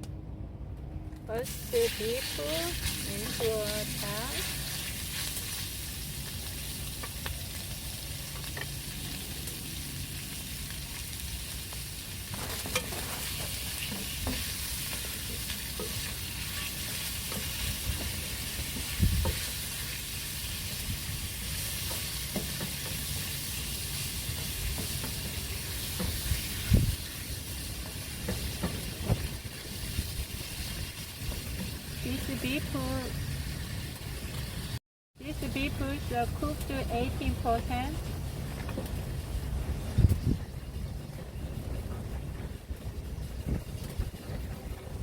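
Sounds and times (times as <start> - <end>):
meat sizzling in a pan: 1.5 - 32.6.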